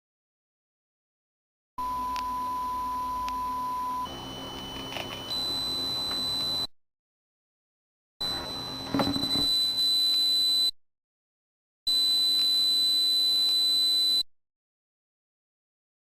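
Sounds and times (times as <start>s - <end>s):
high-pitched electronic tone: 8.2s - 9.9s.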